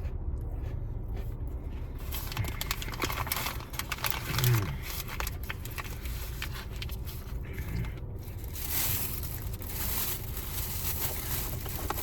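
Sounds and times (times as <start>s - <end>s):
person chewing food: 0.0s - 8.4s
steady low rumble: 0.0s - 12.0s.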